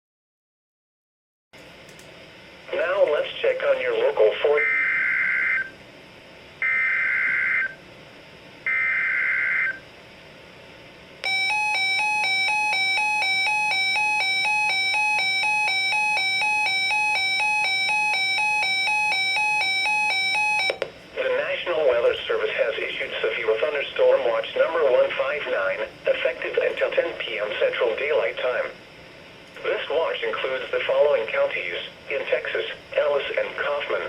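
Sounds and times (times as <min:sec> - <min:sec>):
two-pitch buzzy alert tone: 0:11.2 - 0:20.8.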